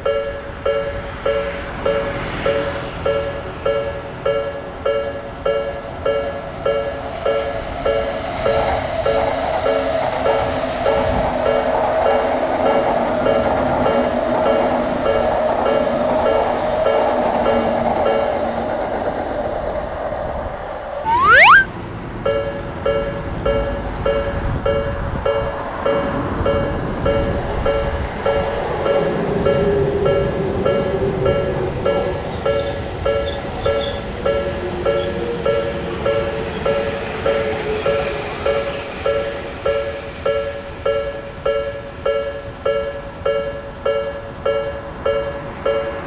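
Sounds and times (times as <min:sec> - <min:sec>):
railroad crossing alarm dinging: 0:00.0 - 0:18.4, 0:22.3 - 0:46.0.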